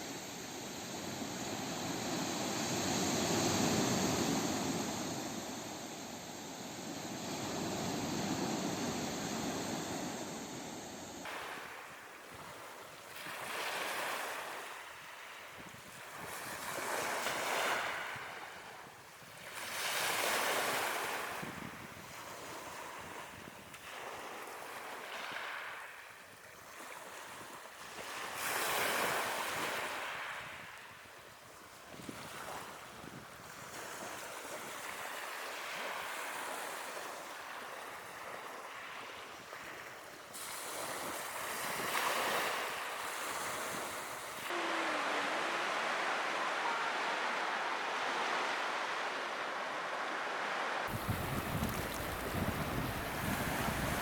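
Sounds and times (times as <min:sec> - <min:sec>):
ocean waves washing in: 0:00.0 - 0:12.1, 0:40.3 - 0:54.0
ocean waves breaking on beach: 0:00.0 - 0:54.0
rush of water: 0:44.3 - 0:54.0.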